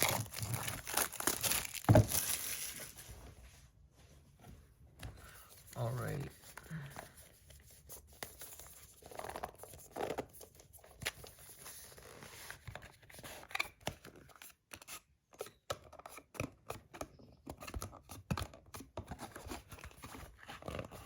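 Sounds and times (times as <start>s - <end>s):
cardboard tearing and scraping: 0.0s - 3.1s.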